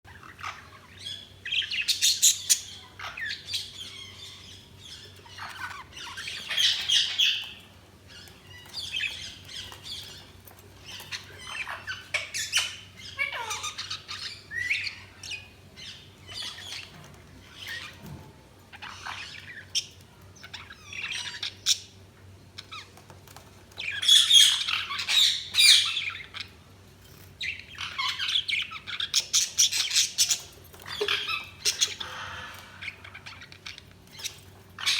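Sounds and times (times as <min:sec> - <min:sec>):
budgies chirping and chattering: 0:00.1 - 0:34.9
faint steady hum: 0:00.1 - 0:34.9.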